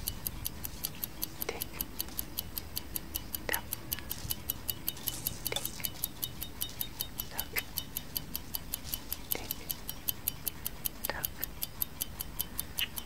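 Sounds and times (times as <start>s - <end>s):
clock ticking: 0.0s - 13.0s
soft steady hiss: 0.0s - 13.0s.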